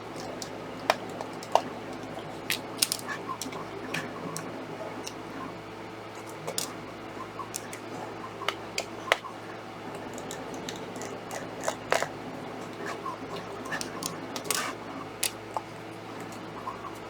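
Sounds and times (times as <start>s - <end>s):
small parts being handled: 0.0s - 4.4s, 6.2s - 6.8s, 9.9s - 17.0s
low steady hum: 0.0s - 17.0s.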